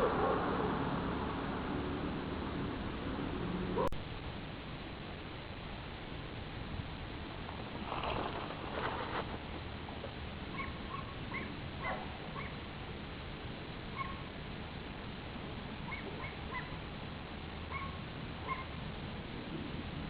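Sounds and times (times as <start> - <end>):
low background noise: 0.0 - 20.0
small dog yipping: 10.5 - 12.6, 13.9 - 14.3, 15.9 - 16.8, 17.7 - 18.8.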